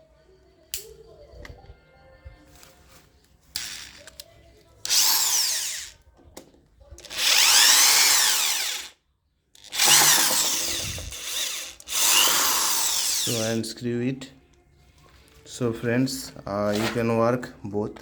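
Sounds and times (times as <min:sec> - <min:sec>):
electric drill motor whining: 0:03.6 - 0:04.0, 0:04.9 - 0:06.0, 0:07.0 - 0:09.0, 0:09.7 - 0:13.6.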